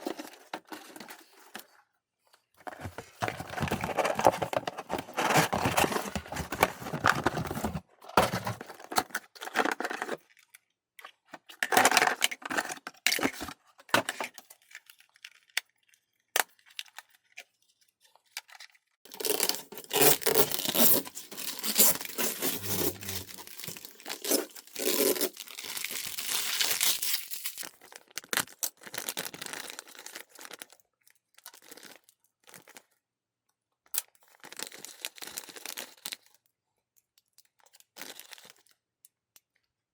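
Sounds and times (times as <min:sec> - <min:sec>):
packaging rustling and tearing: 0:02.7 - 0:10.4, 0:19.1 - 0:28.1.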